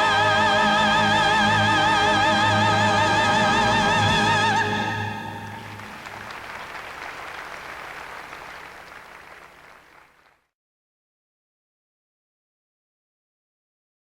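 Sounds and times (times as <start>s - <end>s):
choir and orchestra chord: 0.0s - 5.9s
singer with wide vibrato: 0.0s - 5.9s
audience applause: 1.9s - 2.8s, 4.6s - 10.5s.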